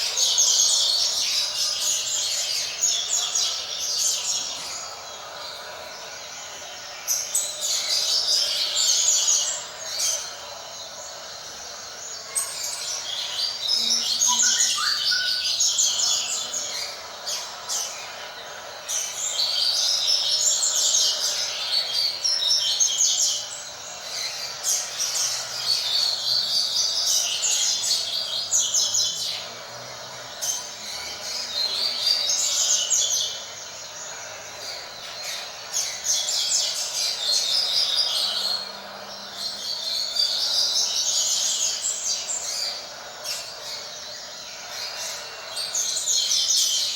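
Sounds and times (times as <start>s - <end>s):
bird singing fast chattering phrases: 11.7s - 46.9s.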